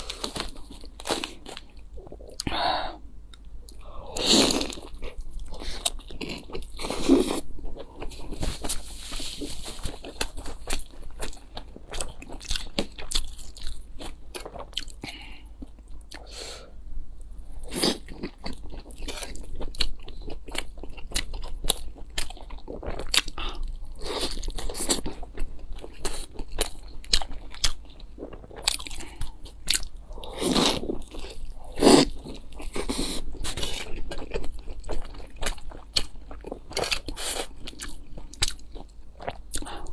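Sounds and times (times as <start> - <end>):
person chewing crunchy food: 0.0 - 2.6, 3.3 - 16.3, 17.4 - 39.9.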